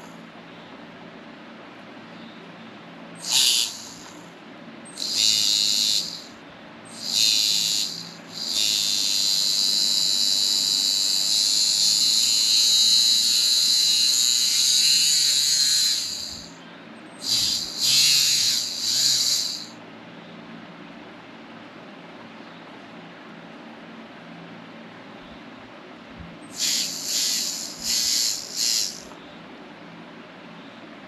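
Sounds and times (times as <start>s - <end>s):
electric motor high whine: 3.2s - 4.2s, 5.0s - 16.6s, 17.2s - 19.8s, 26.5s - 29.2s.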